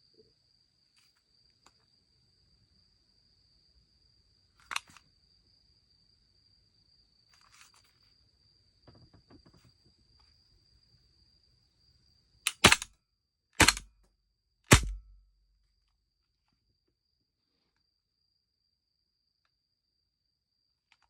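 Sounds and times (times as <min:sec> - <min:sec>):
sharp airsoft pistol shots: 0:12.5 - 0:12.9, 0:13.6 - 0:13.8, 0:14.7 - 0:15.2.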